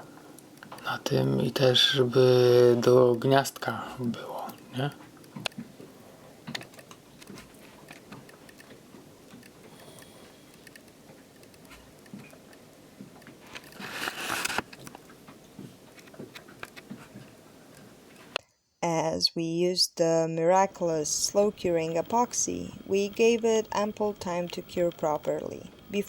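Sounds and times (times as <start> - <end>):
small parts clicking and tapping: 6.4 - 13.8.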